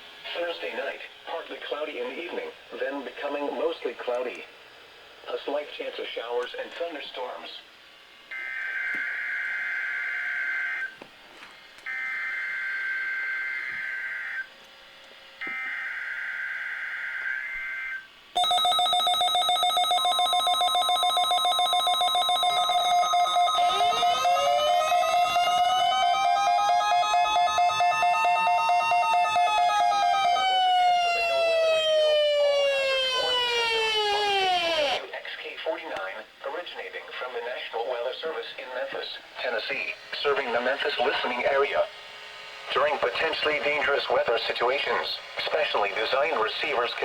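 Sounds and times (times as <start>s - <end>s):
gliding siren-like tones: 15.4s - 35.0s
pulsing alarm tones: 15.4s - 35.0s
buzzy modem-like data screech: 15.6s - 31.5s, 32.8s - 35.0s, 39.4s - 41.9s.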